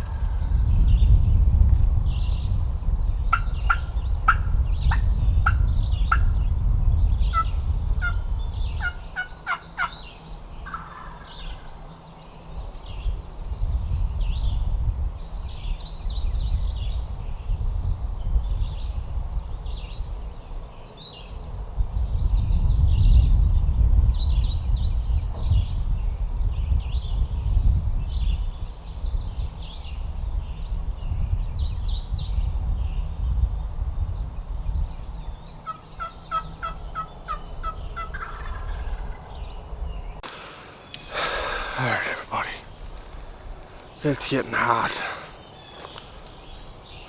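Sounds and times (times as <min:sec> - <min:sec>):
wind rumble on microphone: 0:00.0 - 0:40.2
songbirds calling: 0:02.0 - 0:33.5, 0:34.1 - 0:47.0
wild turkey gobbling: 0:10.6 - 0:11.2, 0:35.7 - 0:39.1.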